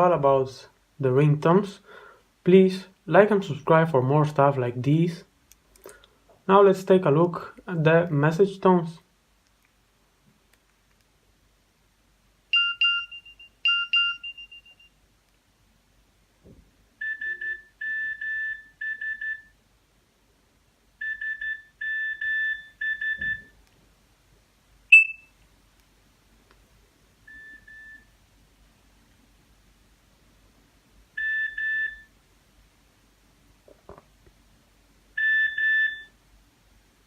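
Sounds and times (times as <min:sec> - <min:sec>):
short electronic beeps: 0:24.9 - 0:25.4.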